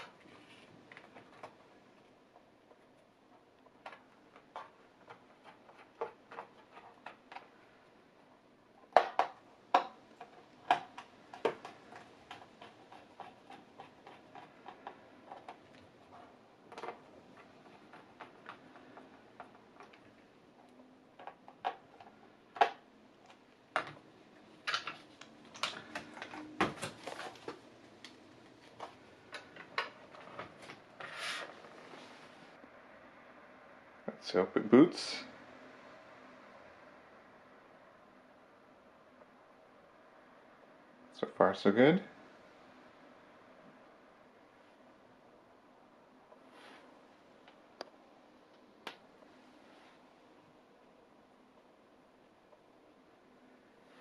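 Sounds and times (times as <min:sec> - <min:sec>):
scraping rustle: 0:29.6 - 0:32.6.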